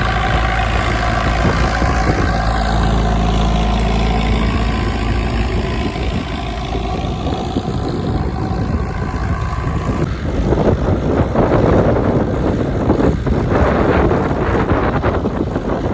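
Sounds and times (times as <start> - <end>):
tractor engine running: 0.0 - 10.5
wind buffeting microphone: 0.0 - 15.9.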